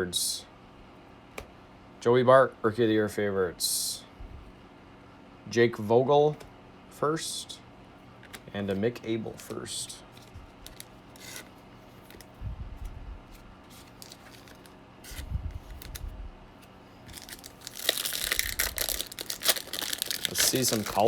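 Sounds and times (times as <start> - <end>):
wrapper tearing and crinkling: 10.2 - 12.3, 13.7 - 16.0, 17.1 - 21.0.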